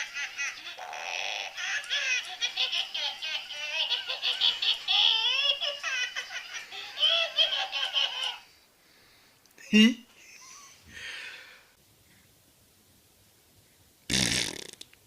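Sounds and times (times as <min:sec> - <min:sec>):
baby laughing: 0:00.0 - 0:08.5.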